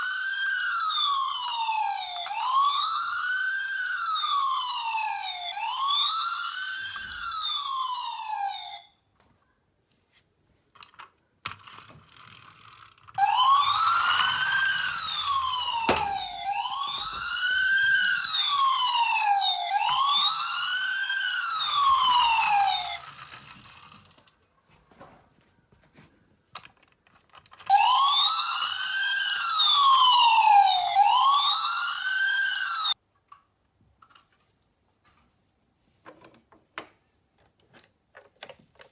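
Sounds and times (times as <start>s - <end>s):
toy ambulance wail siren: 0.0s - 9.0s, 13.2s - 23.8s, 27.6s - 33.0s
small plastic clicks and rattles: 10.7s - 13.2s, 26.5s - 27.7s, 37.4s - 38.9s.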